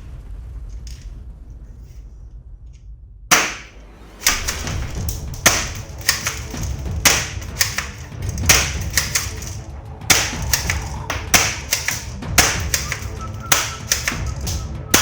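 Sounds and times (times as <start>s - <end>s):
background music: 3.3s - 15.0s
sharp clicks and knocks: 3.3s - 15.0s.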